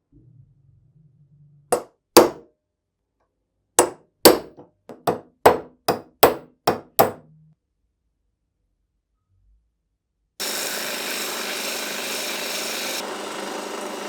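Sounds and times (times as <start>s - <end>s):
hammer striking metal: 2.2s - 2.4s, 3.8s - 7.2s.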